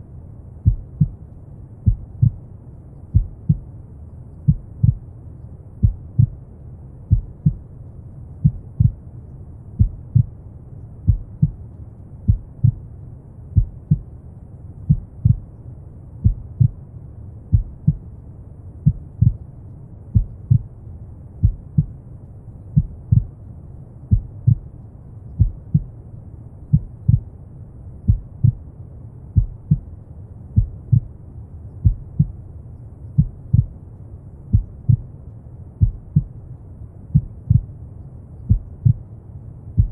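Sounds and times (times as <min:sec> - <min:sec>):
low brown noise: 0:00.0 - 0:39.9
heartbeat thumps: 0:00.6 - 0:01.2, 0:01.8 - 0:02.4, 0:03.1 - 0:03.7, 0:04.5 - 0:05.0, 0:05.8 - 0:06.4, 0:07.1 - 0:07.6, 0:08.4 - 0:09.0, 0:09.8 - 0:10.3, 0:11.1 - 0:11.6, 0:12.3 - 0:12.8, 0:13.6 - 0:14.1, 0:14.9 - 0:15.5, 0:16.2 - 0:16.8, 0:17.5 - 0:18.0, 0:18.8 - 0:19.4, 0:20.1 - 0:20.7, 0:21.4 - 0:21.9, 0:22.8 - 0:23.4, 0:24.1 - 0:24.7, 0:25.4 - 0:25.9, 0:26.7 - 0:27.3, 0:28.1 - 0:28.6, 0:29.4 - 0:29.9, 0:30.6 - 0:31.1, 0:31.8 - 0:32.4, 0:33.2 - 0:33.8, 0:34.5 - 0:35.1, 0:35.8 - 0:36.3, 0:37.1 - 0:37.7, 0:38.5 - 0:39.0.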